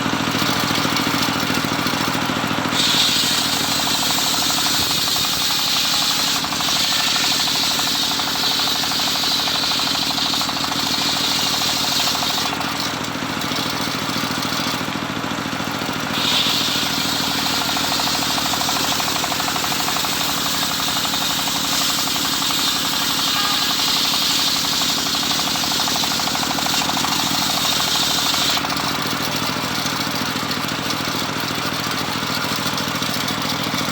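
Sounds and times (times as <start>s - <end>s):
drive motor hum: 0.0s - 33.9s
saw blade ripping wood: 2.7s - 13.5s, 15.8s - 29.2s.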